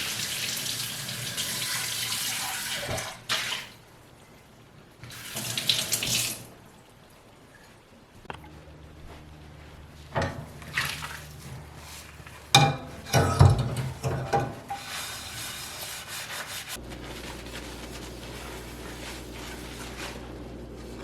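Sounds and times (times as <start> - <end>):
steady low hum: 8.0 - 13.8, 16.7 - 21.0.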